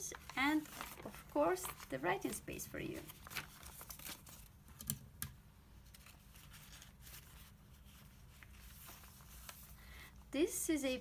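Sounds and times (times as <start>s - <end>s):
paper pages rustling: 0.1s - 4.9s, 5.8s - 9.8s.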